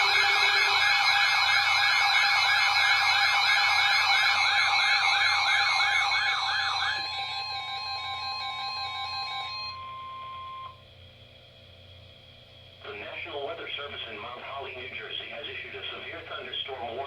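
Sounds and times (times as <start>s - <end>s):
siren sweep: 0.0s - 10.8s.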